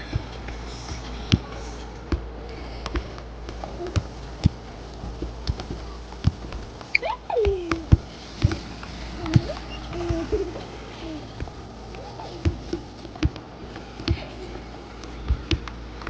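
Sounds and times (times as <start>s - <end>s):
steady low hum: 0.0s - 16.0s
irregular taps and knocks: 11.3s - 14.3s.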